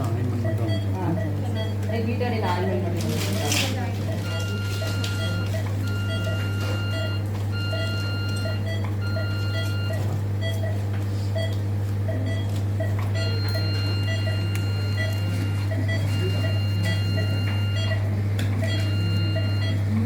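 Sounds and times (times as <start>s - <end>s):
patient monitor pulse beeps: 0.0s - 20.0s
steady low hum: 0.0s - 20.0s
monitor alarm tone: 3.4s - 10.8s, 12.1s - 20.0s.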